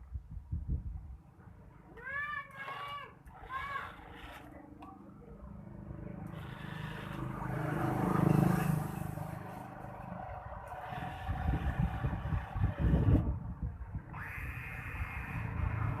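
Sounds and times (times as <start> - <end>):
motor vehicle passing by: 3.3 - 16.0.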